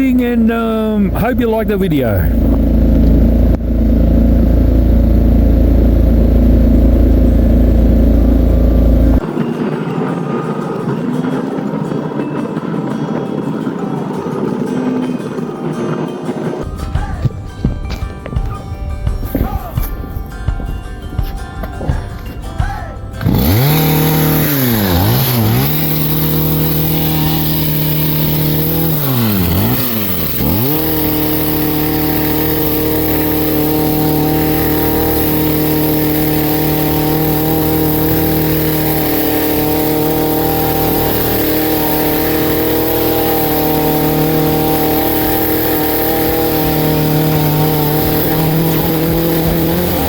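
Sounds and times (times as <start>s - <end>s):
small petrol engine revving: 0.0s - 9.3s, 23.2s - 50.0s.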